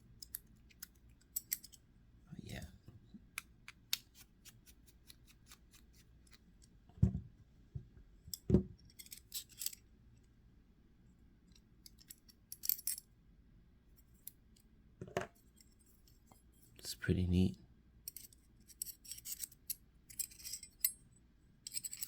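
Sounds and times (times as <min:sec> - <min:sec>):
small metal parts clicking: 0:00.2 - 0:01.8, 0:08.3 - 0:09.8, 0:11.8 - 0:13.0, 0:18.1 - 0:21.0, 0:21.7 - 0:22.0.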